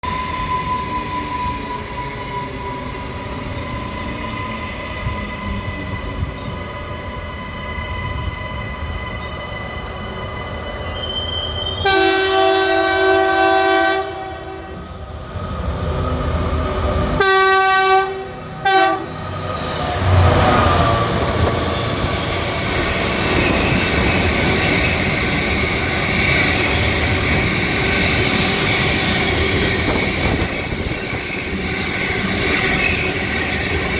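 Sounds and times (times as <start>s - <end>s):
wheels squealing: 0.1s - 11.9s
train air horn: 11.8s - 14.9s, 17.2s - 19.2s.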